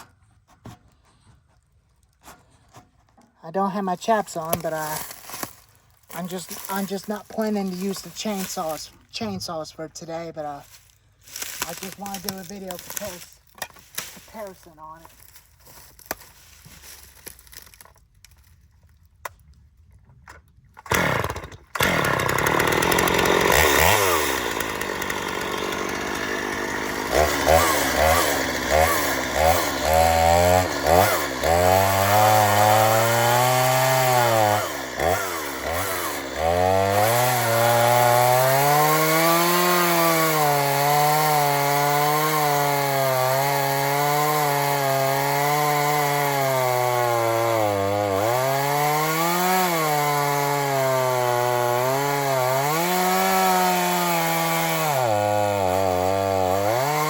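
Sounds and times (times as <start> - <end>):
chainsaw cutting into log: 4.0 - 9.4, 10.4 - 17.8, 20.8 - 57.0
chainsaw revving: 4.3 - 8.9, 11.2 - 13.4, 20.9 - 57.0.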